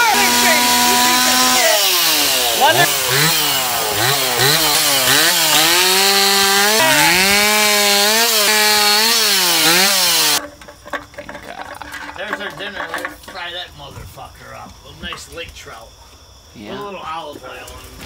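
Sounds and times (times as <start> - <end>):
chainsaw engine revving: 0.0 - 10.4.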